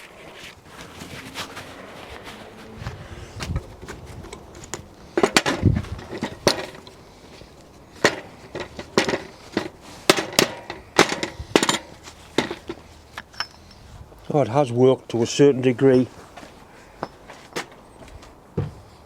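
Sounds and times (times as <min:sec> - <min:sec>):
metal clinks and knocks: 0:03.5 - 0:14.0.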